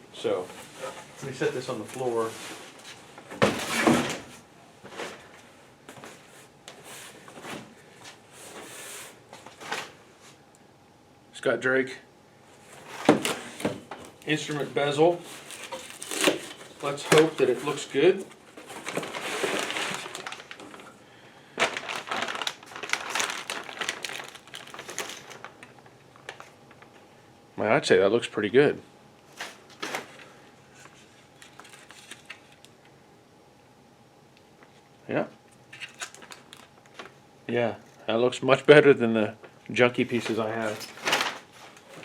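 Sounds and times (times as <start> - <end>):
packaging rustling: 14.3 - 27.0, 35.7 - 37.2, 40.1 - 42.0.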